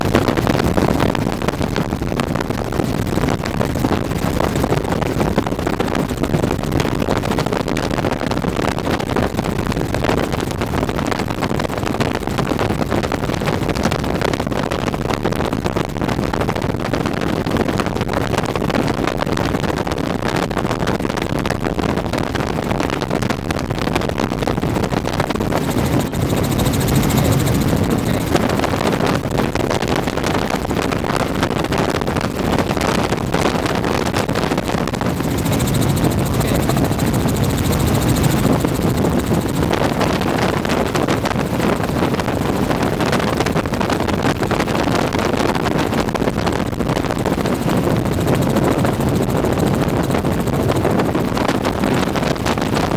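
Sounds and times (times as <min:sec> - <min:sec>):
helicopter rotor and engine: 0:02.1 - 0:07.6, 0:24.7 - 0:29.5, 0:32.3 - 0:52.9.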